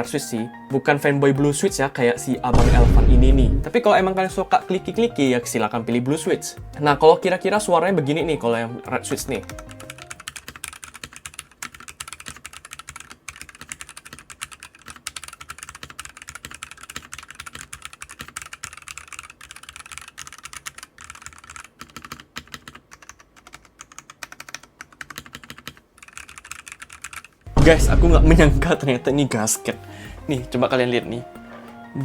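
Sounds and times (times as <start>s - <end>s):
mechanical keyboard typing: 2.5s - 3.7s, 9.3s - 28.7s.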